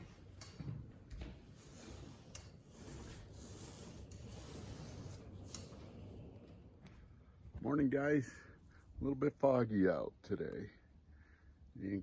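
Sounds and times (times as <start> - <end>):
paint roller swishing: 0.0 - 6.8.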